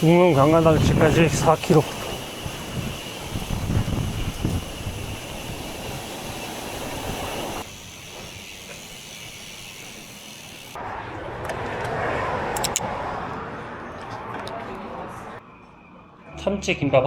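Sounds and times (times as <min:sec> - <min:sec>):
rushing wind: 0:00.0 - 0:08.6, 0:10.8 - 0:15.4
bicycle road noise: 0:00.0 - 0:16.2.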